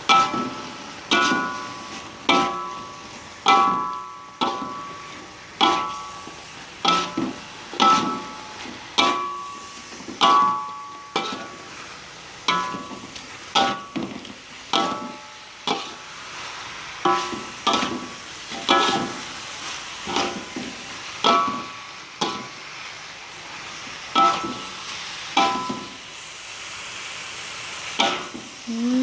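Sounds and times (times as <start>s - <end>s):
fish sizzling in pan: 0.0s - 29.0s
metal spatula striking pan: 0.1s - 11.8s, 12.5s - 16.1s, 17.0s - 19.4s, 20.0s - 22.6s, 24.2s - 26.0s, 28.0s - 28.5s.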